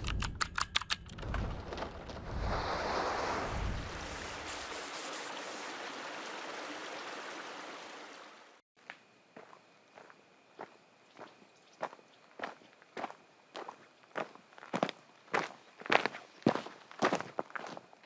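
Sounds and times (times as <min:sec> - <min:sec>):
rushing surf-like noise: 0:02.4 - 0:07.6.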